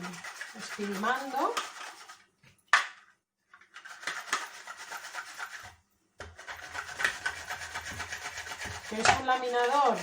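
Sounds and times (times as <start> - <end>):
onion rasping on mandoline slicer: 6.6 - 10.0.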